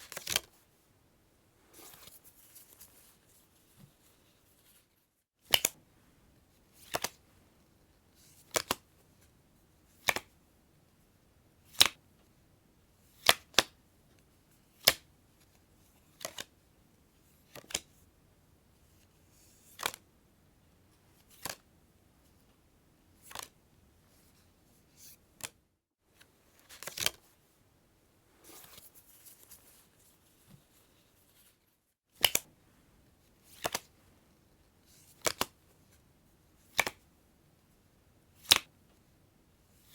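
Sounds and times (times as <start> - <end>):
cards rustling: 0.0 - 0.6, 26.5 - 27.2, 28.4 - 31.6, 33.4 - 33.9
playing cards snapping down: 5.5 - 5.8, 6.8 - 7.2, 8.5 - 8.8, 10.0 - 10.3, 11.8 - 12.0, 13.2 - 13.7, 14.8 - 15.0, 32.2 - 32.5, 33.5 - 33.9, 35.2 - 35.5, 36.7 - 37.0, 38.4 - 38.7.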